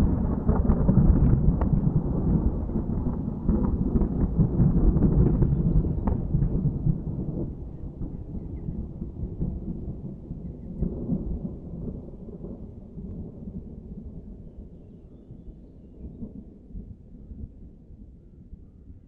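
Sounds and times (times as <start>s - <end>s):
thunder rumbling: 0.0s - 14.8s.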